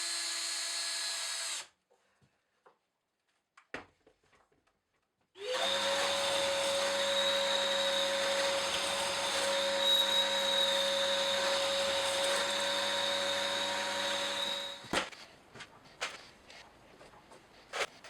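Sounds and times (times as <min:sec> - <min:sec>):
electric motor humming and whining: 0:05.4 - 0:14.9.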